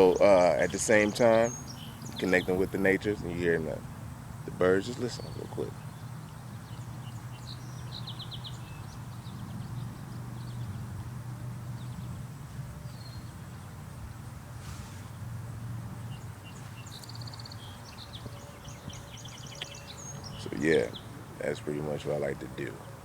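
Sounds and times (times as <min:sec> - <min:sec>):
birds chirping and trilling: 0:00.0 - 0:11.0, 0:16.0 - 0:23.0
steady low hum: 0:00.0 - 0:23.0.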